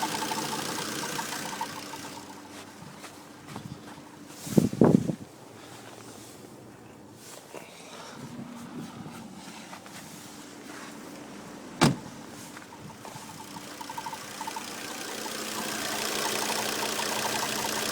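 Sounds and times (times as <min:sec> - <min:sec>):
car running noise: 0:00.0 - 0:05.1, 0:09.9 - 0:17.9
loud thump: 0:11.8 - 0:12.1
quick light ticking: 0:12.9 - 0:17.9.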